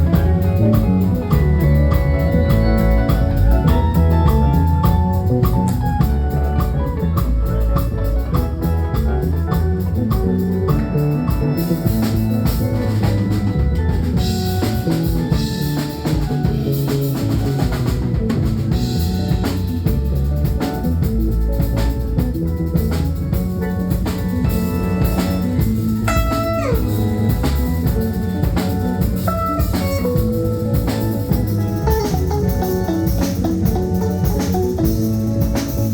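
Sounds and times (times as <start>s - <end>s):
drum kit beat: 0.0s - 35.9s
live band playing: 0.0s - 35.9s
cymbals: 24.0s - 35.9s.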